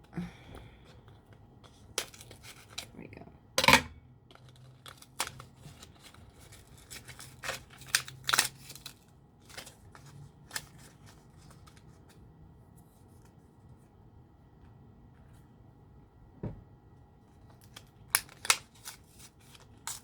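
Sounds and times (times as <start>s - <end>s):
packaging crinkling and clicking: 1.6s - 2.9s, 4.3s - 11.9s, 17.5s - 20.0s.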